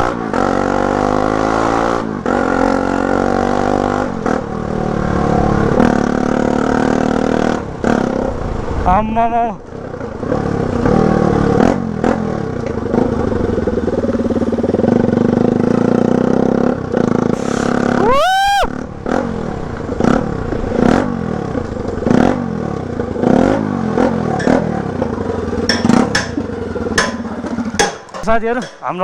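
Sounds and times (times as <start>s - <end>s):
motorcycle open exhaust revving: 0.0s - 8.9s, 9.6s - 29.0s
short high cry: 17.4s - 18.8s.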